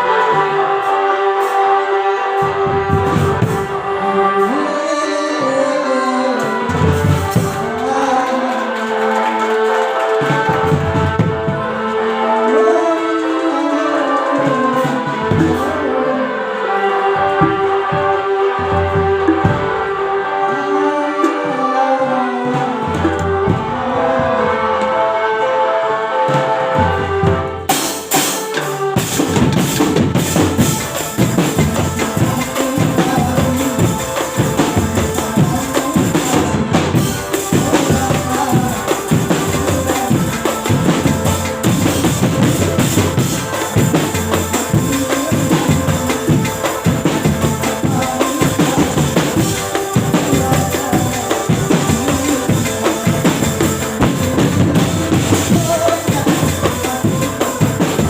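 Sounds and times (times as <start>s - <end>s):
drums: 0.0s - 25.0s, 26.3s - 58.0s
jingling hand percussion: 3.3s - 16.0s, 27.7s - 58.0s.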